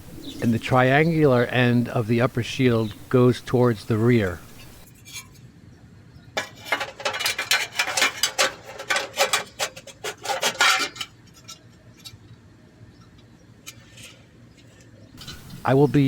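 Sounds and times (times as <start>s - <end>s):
sheet metal parts clinking: 6.4s - 12.2s, 13.6s - 16.0s.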